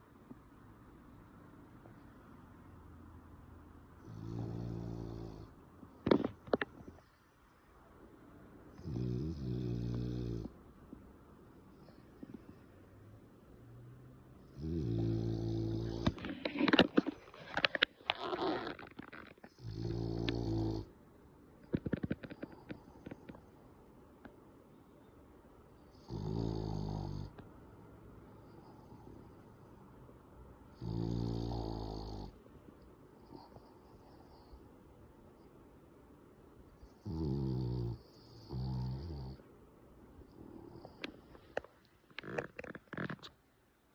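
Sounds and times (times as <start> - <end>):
dog snoring: 4.0 - 6.4, 8.7 - 10.6, 14.4 - 17.1, 19.4 - 20.9, 25.8 - 27.4, 28.3 - 29.8, 30.7 - 32.4, 36.7 - 39.5, 40.2 - 41.3
quiet breathing: 9.8 - 16.8, 21.7 - 26.2, 26.9 - 42.4
snorts and clicks: 14.7 - 20.9, 21.6 - 23.5.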